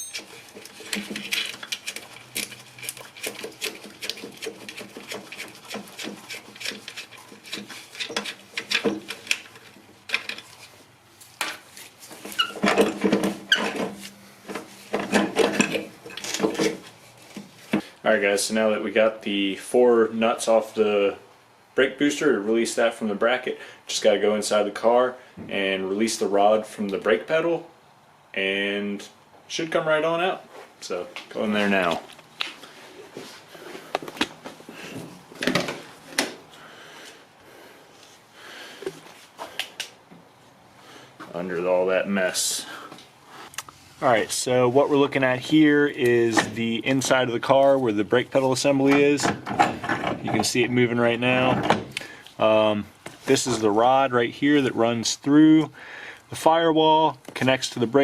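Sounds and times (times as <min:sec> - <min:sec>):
ringing metallic taps: 0:00.0 - 0:00.3
wrench clicking and scraping on metal: 0:00.0 - 0:10.7
rustling: 0:00.0 - 0:17.9
sharp knocks and clunks: 0:48.9 - 0:50.5.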